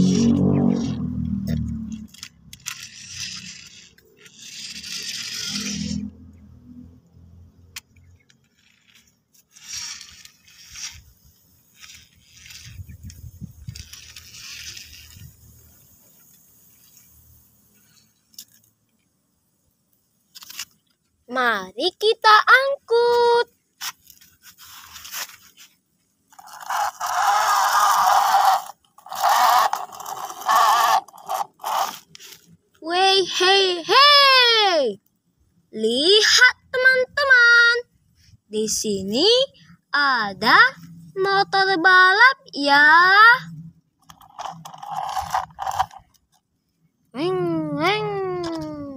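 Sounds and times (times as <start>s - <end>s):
plastic toy vehicles scraping: 0.0s - 6.5s, 7.1s - 19.1s, 20.2s - 21.2s, 22.9s - 34.2s, 40.5s - 46.5s.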